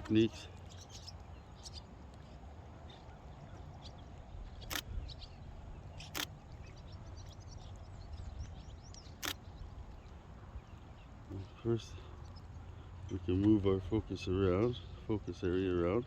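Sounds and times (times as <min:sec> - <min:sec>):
faint bird chirps: 0:00.0 - 0:13.2
camera shutter clicks: 0:04.6 - 0:04.9, 0:06.0 - 0:06.4, 0:09.2 - 0:09.4.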